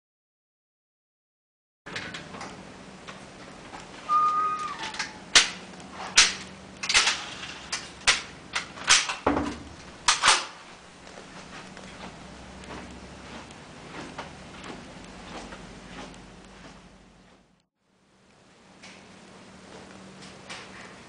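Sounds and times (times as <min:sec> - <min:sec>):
brief high tone: 0:04.1 - 0:05.2
faint steady hum: 0:09.4 - 0:21.0.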